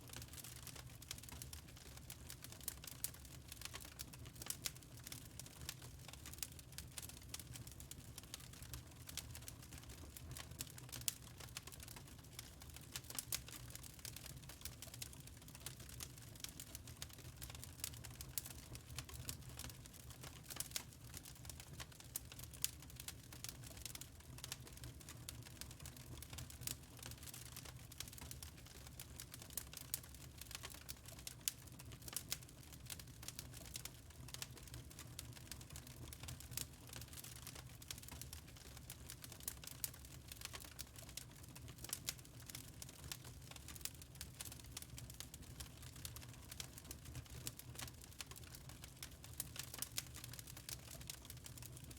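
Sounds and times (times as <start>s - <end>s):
burning logs popping and snapping: 22.6s - 51.8s.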